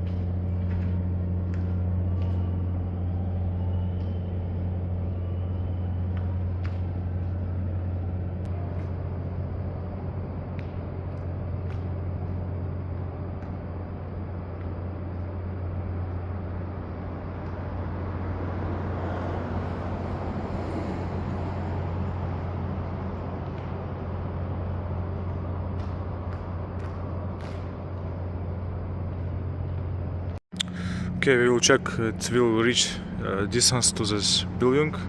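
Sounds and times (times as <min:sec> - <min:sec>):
road traffic rumble: 0:00.0 - 0:35.0
vehicle passing: 0:16.6 - 0:28.5.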